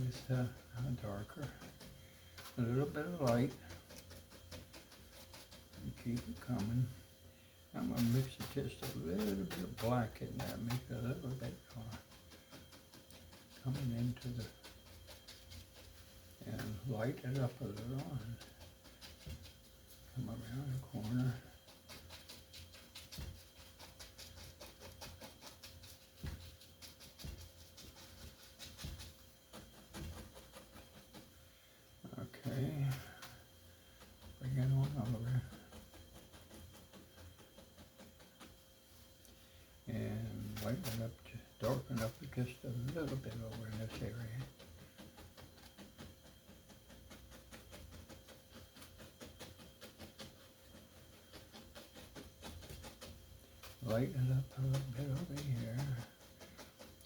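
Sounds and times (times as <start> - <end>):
low steady hum: 0.0 - 57.0
paintbrush dabbing on canvas: 0.0 - 57.0.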